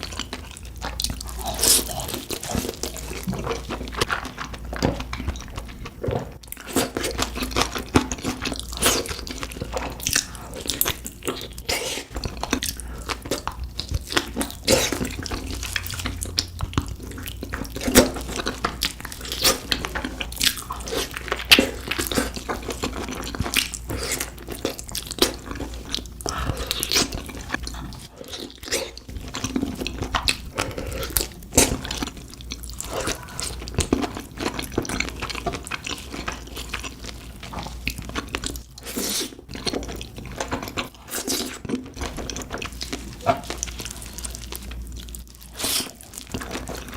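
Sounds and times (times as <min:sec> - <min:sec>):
wet chewing and lip-smacking: 0:00.0 - 0:46.9.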